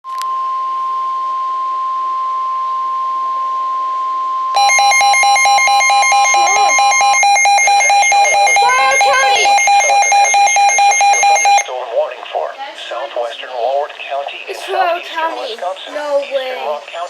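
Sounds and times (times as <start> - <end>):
emergency alert tone: 4.5 - 11.7
rapid electronic alarm beeping: 4.6 - 11.7.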